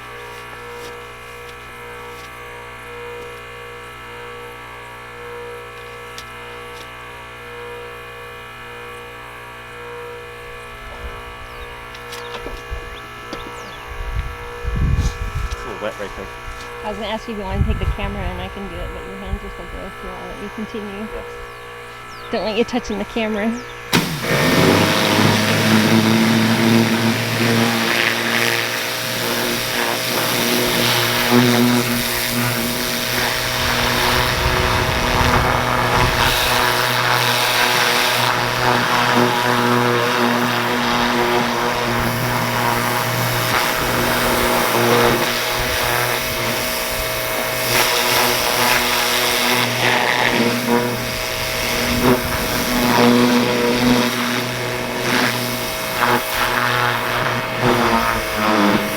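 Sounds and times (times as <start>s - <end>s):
pressure washer jet hissing: 14.8s - 58.9s.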